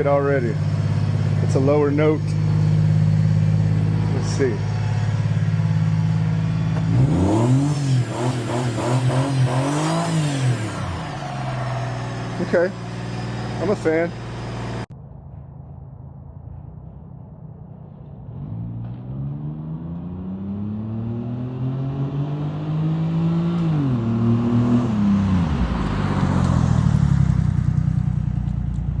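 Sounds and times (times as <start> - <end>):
small truck engine revving: 2.5 - 14.9.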